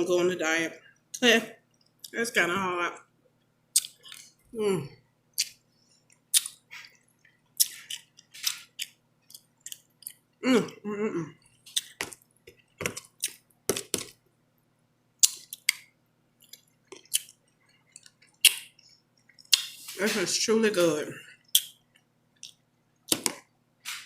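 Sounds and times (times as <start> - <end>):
person chewing with mouth smacks: 3.7 - 4.5, 5.3 - 10.8, 11.4 - 14.2, 15.2 - 20.0
person humming: 4.6 - 5.0.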